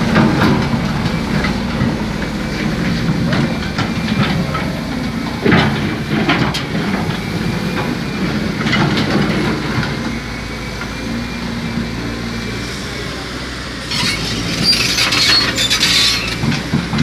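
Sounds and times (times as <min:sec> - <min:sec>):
excavator diesel engine running: 0:00.0 - 0:17.0.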